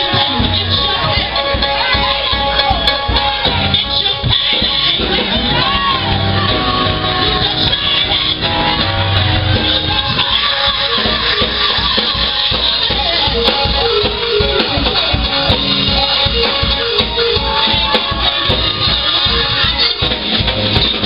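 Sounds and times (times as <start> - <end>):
church band music: 0.0 - 21.0
drums playing a fast beat: 0.0 - 21.0
electric guitar: 0.0 - 21.0.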